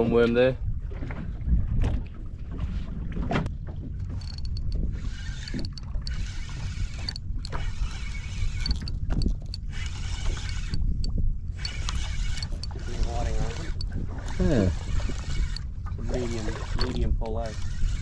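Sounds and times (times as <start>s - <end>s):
water lapping against hull: 0.0s - 18.0s
wind buffeting microphone: 0.0s - 18.0s
light clicks and knocks: 4.0s - 7.6s, 8.6s - 14.0s.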